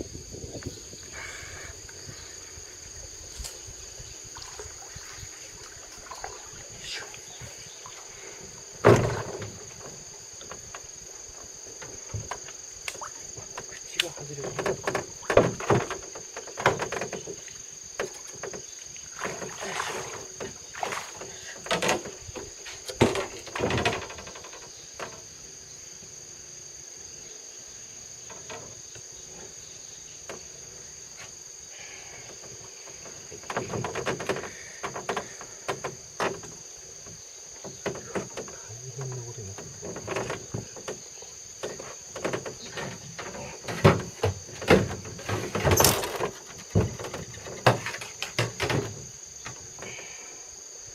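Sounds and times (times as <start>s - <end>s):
insects singing: 0.0s - 50.9s
knocks and rustling clatter: 8.7s - 12.6s, 13.3s - 25.3s, 28.2s - 28.9s, 32.3s - 49.9s.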